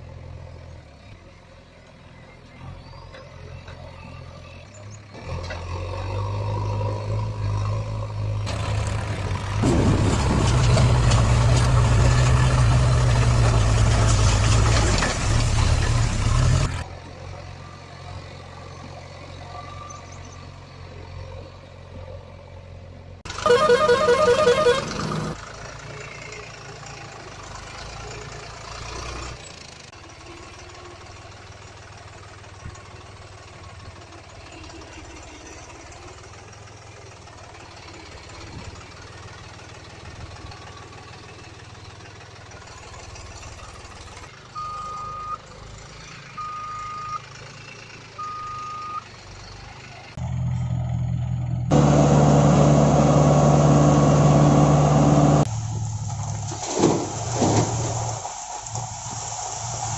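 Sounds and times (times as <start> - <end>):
heavy machinery engine hum: 0.0 - 59.9
reversing alarm beeping: 44.6 - 45.4, 46.4 - 47.2, 48.2 - 49.0.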